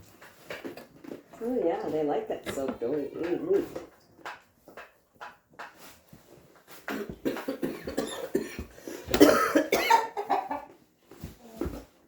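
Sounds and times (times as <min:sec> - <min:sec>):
loud cough: 0:06.9 - 0:10.6.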